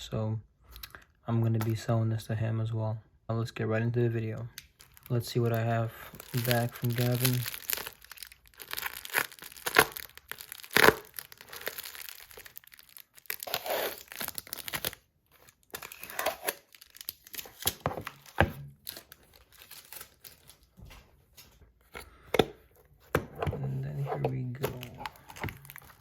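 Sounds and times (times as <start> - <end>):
packing material crinkling: 4.6 - 20.9, 24.2 - 26.0
tape and paper tearing: 8.6 - 12.5, 13.2 - 15.0, 15.6 - 20.4.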